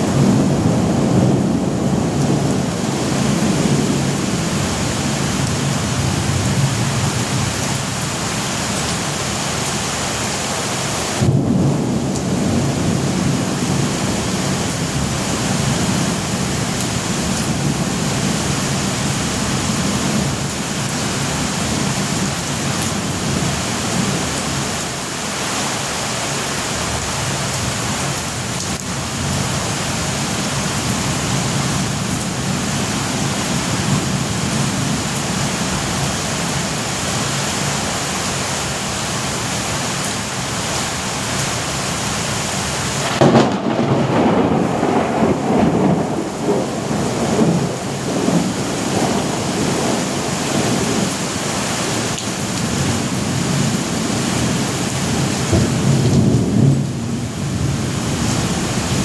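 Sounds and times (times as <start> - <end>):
low rumble of thunder: 0.0 - 8.0, 11.2 - 24.6, 43.0 - 51.4, 52.6 - 59.0
heavy rain falling: 0.0 - 59.0.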